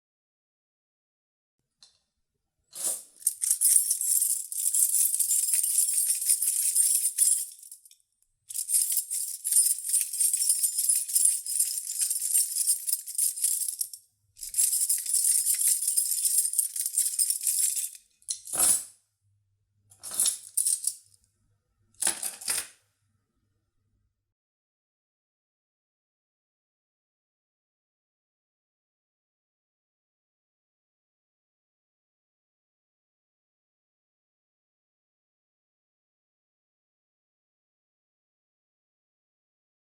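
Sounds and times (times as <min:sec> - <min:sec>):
keys jingling: 0:02.8 - 0:18.8, 0:20.0 - 0:21.0.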